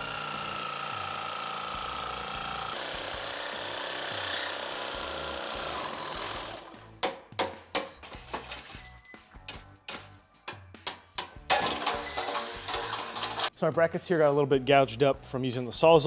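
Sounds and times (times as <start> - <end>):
reciprocating saw cutting steel: 0.0 - 7.2, 10.9 - 13.5.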